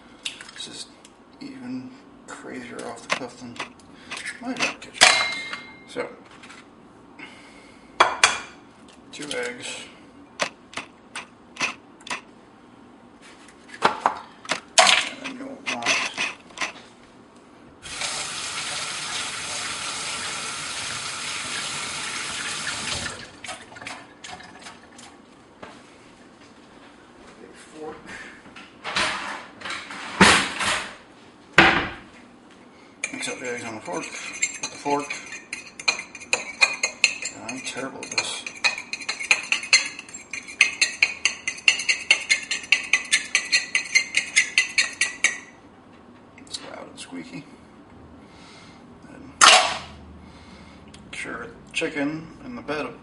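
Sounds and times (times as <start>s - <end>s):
tap water running: 17.8s - 25.2s
fork beating eggs in a bowl: 33.0s - 45.5s.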